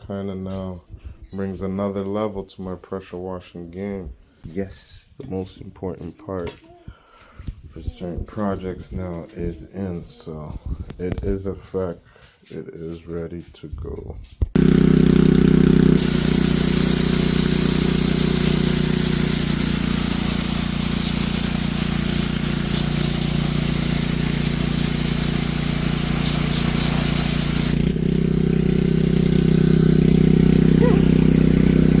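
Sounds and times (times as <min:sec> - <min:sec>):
water spraying with high hiss: 0:14.6 - 0:28.0, 0:29.2 - 0:32.0
pressure washer engine running: 0:14.6 - 0:32.0.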